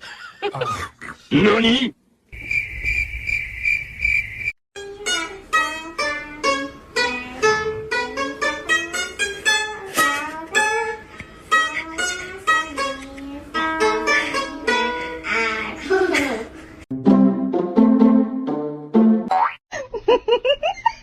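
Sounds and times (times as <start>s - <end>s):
plucked string bouncy melody: 4.8s - 15.2s, 16.9s - 19.6s.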